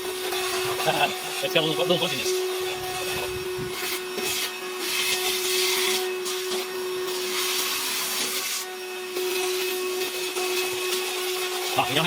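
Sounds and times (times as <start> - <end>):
handheld vacuum running: 0.0 - 12.0.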